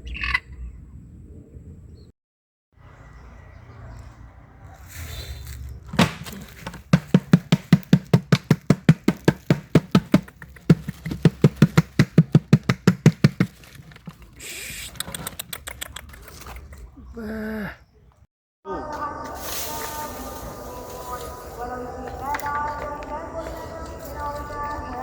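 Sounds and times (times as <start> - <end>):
repeated knocking: 6.0 - 13.7.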